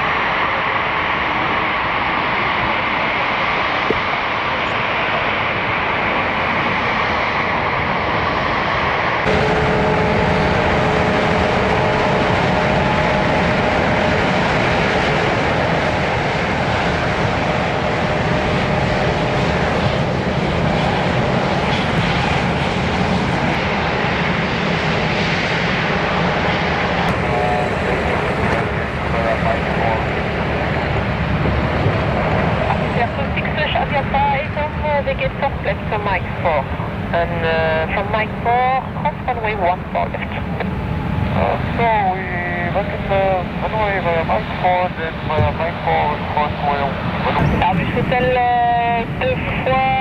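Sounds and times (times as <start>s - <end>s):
jet engines running: 0.0s - 50.0s
steady tones: 9.3s - 16.2s, 45.2s - 50.0s.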